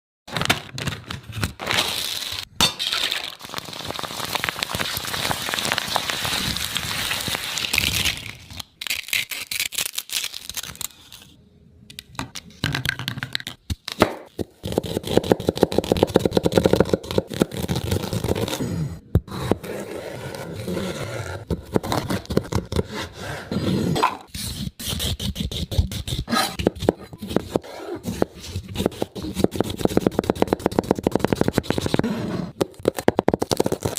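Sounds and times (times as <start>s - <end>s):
crisp food cracking and crunching: 3.3s - 11.1s.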